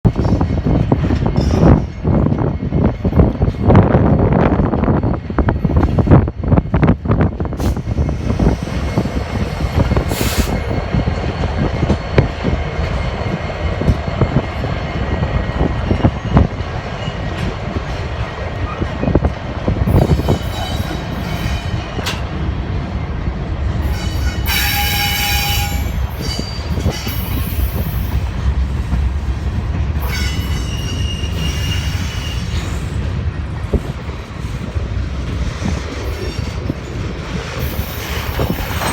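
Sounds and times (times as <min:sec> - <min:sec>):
freight train wheels rumbling: 0:00.0 - 0:38.9
wheel squeals: 0:30.0 - 0:32.9.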